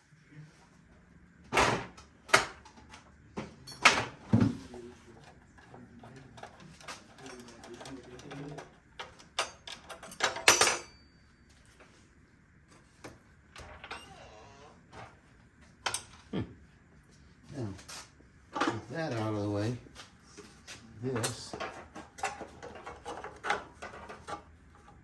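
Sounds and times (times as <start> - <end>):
saw parts knocking and scraping: 21.2 - 25.0.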